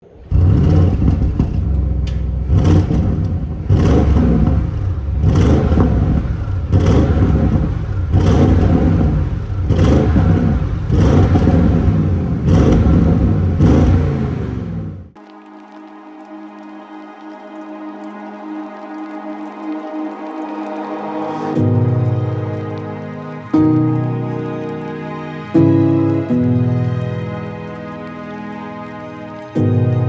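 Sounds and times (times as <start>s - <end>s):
car engine revving: 0.0s - 15.2s.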